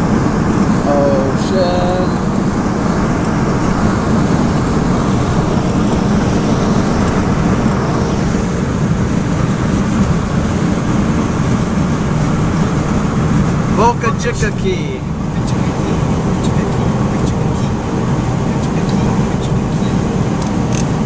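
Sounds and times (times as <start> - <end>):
wind and road noise in car: 0.0 - 21.0.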